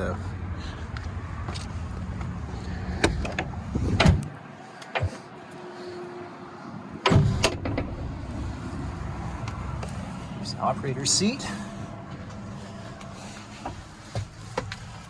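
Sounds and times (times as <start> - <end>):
cab door knocks and latch clicks: 3.0 - 4.3
low outside rumble: 6.6 - 15.0.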